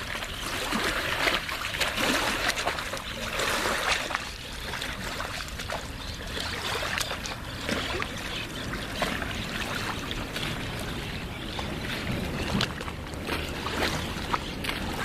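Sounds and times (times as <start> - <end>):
water lapping and splashing: 0.0 - 15.0.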